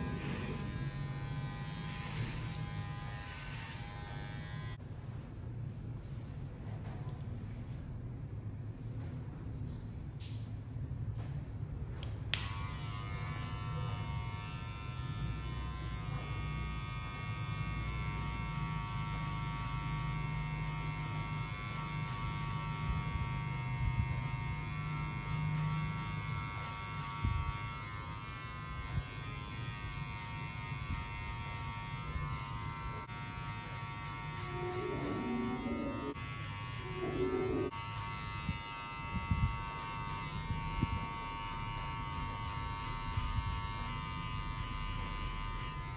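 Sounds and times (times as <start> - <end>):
electric hair clipper buzzing: 0.0 - 4.8, 12.3 - 45.9
hair clipper switch click: 12.3 - 12.7.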